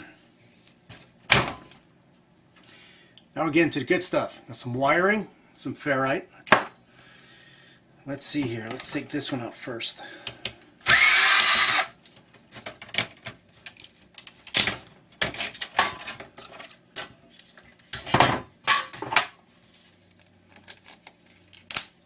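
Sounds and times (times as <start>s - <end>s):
power screwdriver whirring: 10.8s - 12.0s.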